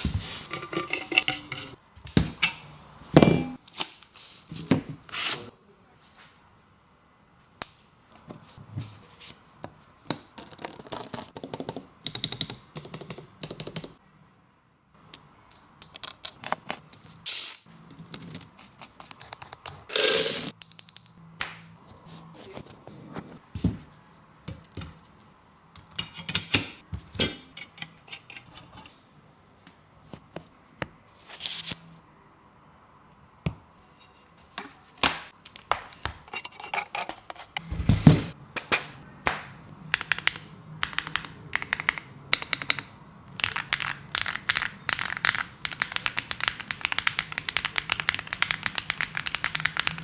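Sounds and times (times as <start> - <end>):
fast typing on mechanical keyboard: 40.0 - 42.8, 43.4 - 50.0.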